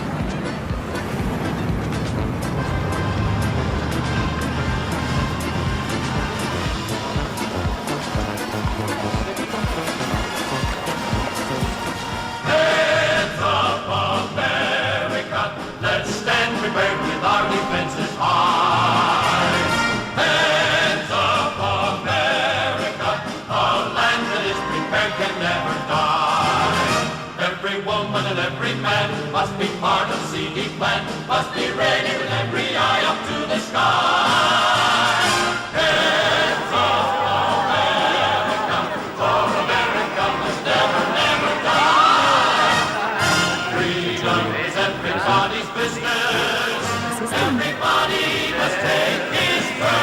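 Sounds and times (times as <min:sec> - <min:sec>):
steady music beat: 0:00.0 - 0:12.4, 0:35.9 - 0:50.0
steady bass: 0:00.0 - 0:14.6, 0:35.8 - 0:50.0
choral singing: 0:02.4 - 0:50.0.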